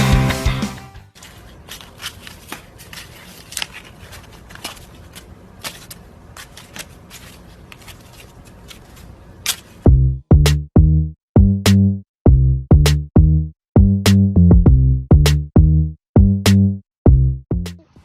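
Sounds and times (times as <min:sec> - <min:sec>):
rustling: 0:01.2 - 0:09.9
electronic music with drum beat: 0:09.9 - 0:17.8.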